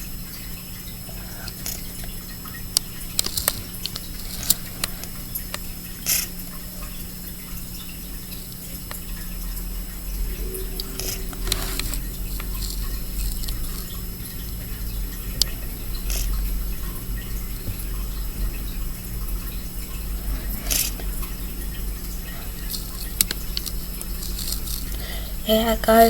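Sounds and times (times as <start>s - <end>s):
drips and taps: 0.3s - 25.1s
low rumble: 9.1s - 23.2s
heavy rain: 9.4s - 26.0s.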